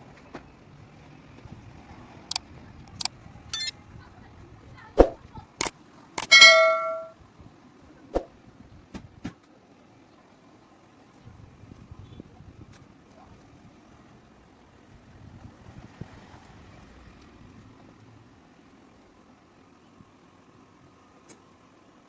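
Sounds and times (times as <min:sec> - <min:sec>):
loud ringing metal clang: 0:06.2 - 0:07.1
metal clanking on metal: 0:06.2 - 0:07.1.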